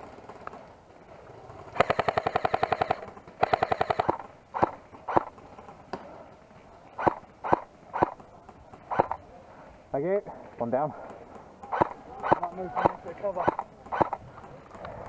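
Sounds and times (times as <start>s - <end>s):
airsoft rifle firing: 1.8s - 5.5s, 7.0s - 9.2s, 11.6s - 14.3s.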